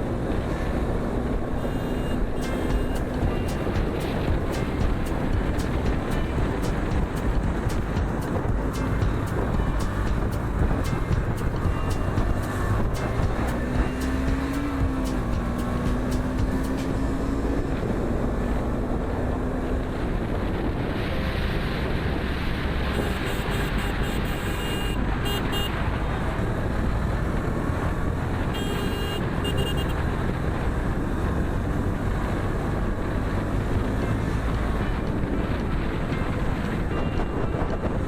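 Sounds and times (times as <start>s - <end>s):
wind rush on microphone: 0.0s - 28.6s, 29.3s - 38.0s
road noise: 0.0s - 38.0s
motorcycle engine: 1.5s - 19.4s.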